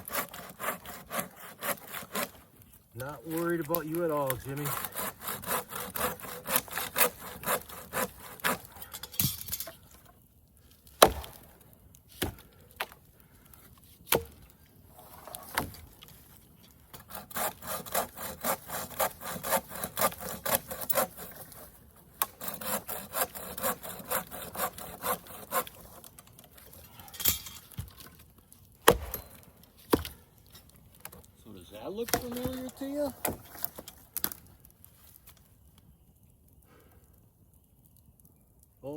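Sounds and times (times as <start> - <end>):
hand saw cutting wood: 0.0 - 9.8, 14.1 - 14.4, 15.0 - 16.1, 17.0 - 26.7, 32.0 - 34.4.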